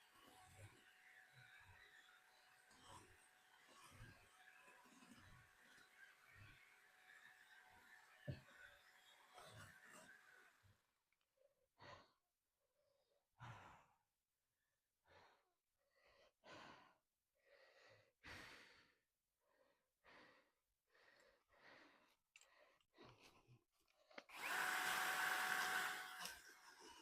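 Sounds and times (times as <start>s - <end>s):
person breathing heavily: 15.0s - 23.4s.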